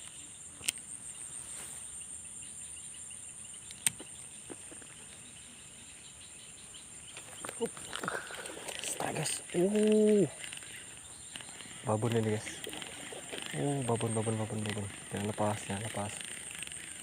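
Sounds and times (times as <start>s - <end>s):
insects chirring: 0.0s - 17.0s
sharp clicks: 3.6s - 4.6s, 7.1s - 17.0s.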